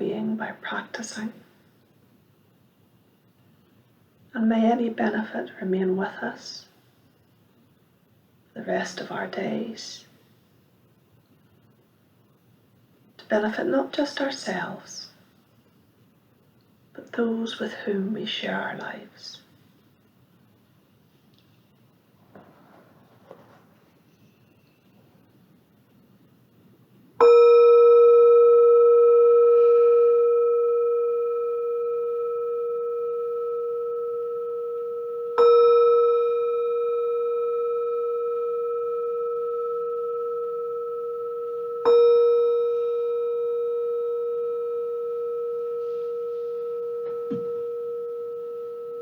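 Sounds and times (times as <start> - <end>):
meditation bell ringing: 27.2 - 49.0.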